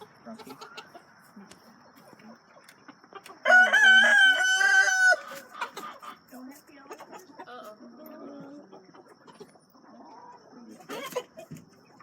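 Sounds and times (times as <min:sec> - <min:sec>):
chickens clucking: 0:00.0 - 0:12.0
rooster crowing: 0:03.4 - 0:05.4.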